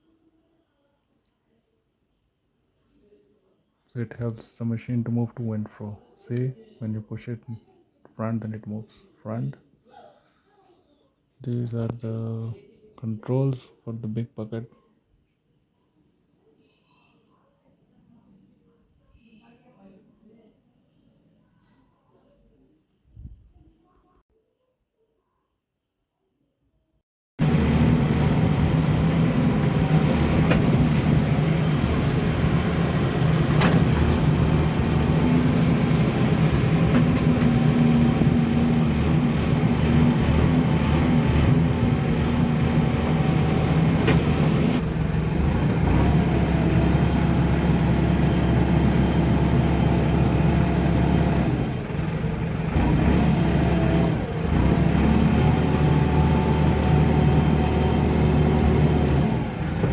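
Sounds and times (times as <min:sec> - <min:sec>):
diesel engine running: 0:27.4 - 0:59.9.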